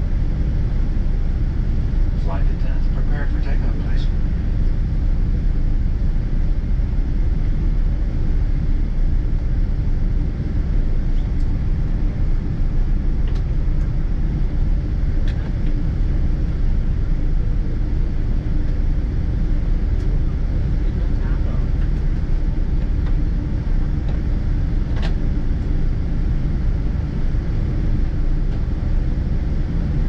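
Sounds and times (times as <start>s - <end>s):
low rumble of jet engines: 0.0s - 30.0s
faint clicks in cabin: 13.2s - 14.0s, 15.2s - 15.8s, 22.8s - 23.2s, 23.8s - 24.2s, 24.9s - 25.8s.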